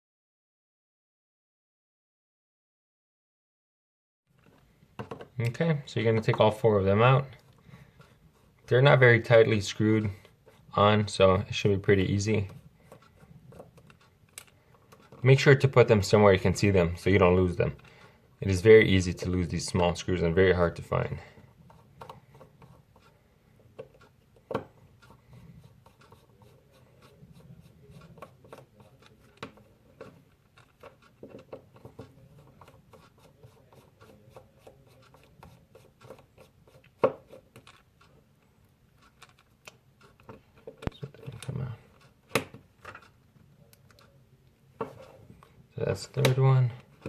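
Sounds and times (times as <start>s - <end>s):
screwdriver clicking and scraping: 12.0s - 15.3s, 21.4s - 38.2s, 39.0s - 44.1s.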